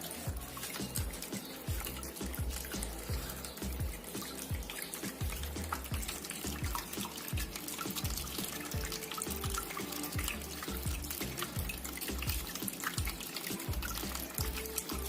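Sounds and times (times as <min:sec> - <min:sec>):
fountain water trickling: 0:00.0 - 0:15.0.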